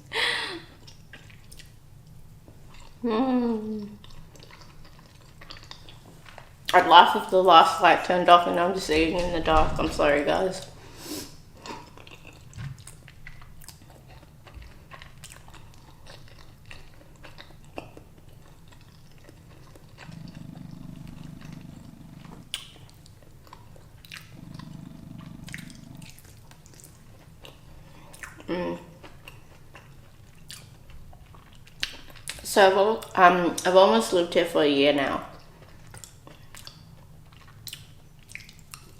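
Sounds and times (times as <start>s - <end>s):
person chewing food: 0.7s - 3.0s, 3.7s - 6.8s, 11.6s - 32.4s, 35.3s - 38.9s.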